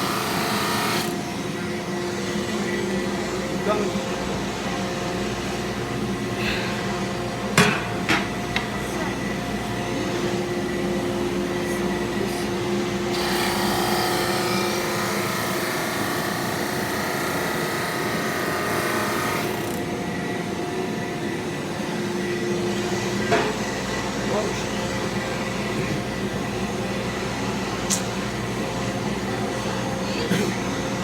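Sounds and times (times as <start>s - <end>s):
drum sander motor running: 0.0s - 6.2s, 9.2s - 30.0s.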